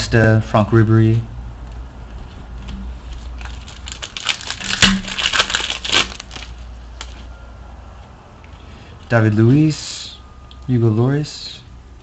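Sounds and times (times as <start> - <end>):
card pack wrapper crinkling: 3.0 - 7.3.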